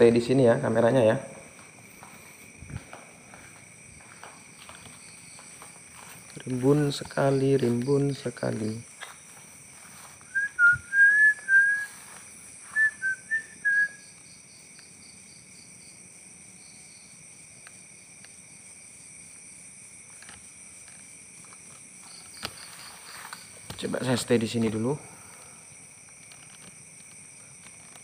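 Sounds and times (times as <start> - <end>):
insects droning: 0.0 - 28.0
whistled notes: 10.3 - 12.0, 12.7 - 14.0.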